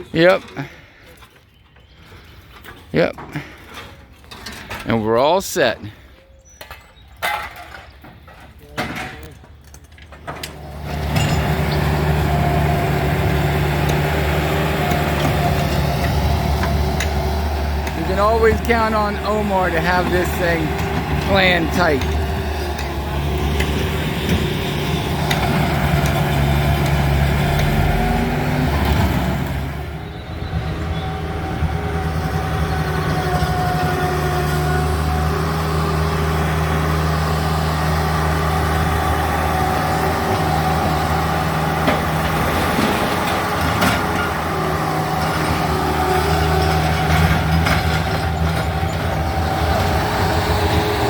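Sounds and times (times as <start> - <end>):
diesel engine running: 10.5 - 51.0.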